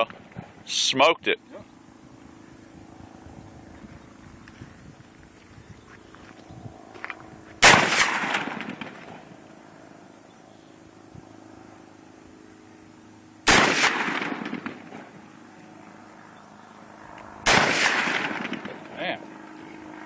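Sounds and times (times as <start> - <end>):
faint hum: 0.0 - 20.0
rifle shot echo: 7.6 - 9.4, 13.4 - 15.2, 17.4 - 19.0.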